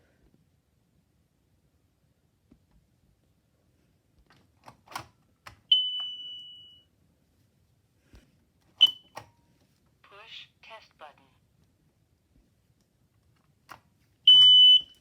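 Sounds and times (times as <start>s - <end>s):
smoke alarm chirp: 5.7s - 6.9s, 8.8s - 9.2s, 14.3s - 15.0s
smoke alarm high beep: 5.7s - 6.9s, 8.8s - 9.2s, 14.3s - 15.0s.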